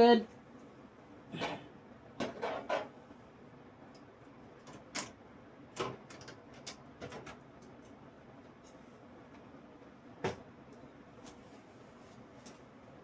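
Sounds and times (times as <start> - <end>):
computer parts clicking and tapping: 5.8 - 8.0.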